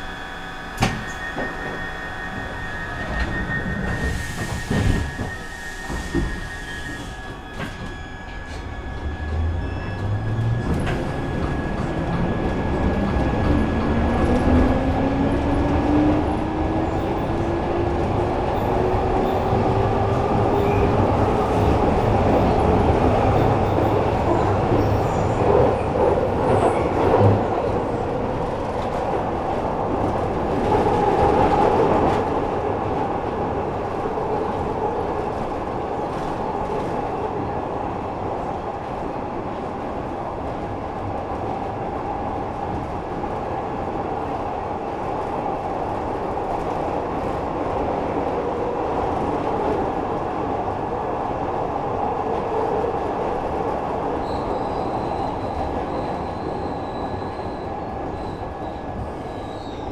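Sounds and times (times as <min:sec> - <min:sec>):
wheels rumbling on rails: 0:00.2 - 0:50.6
train clattering: 0:00.8 - 0:32.4.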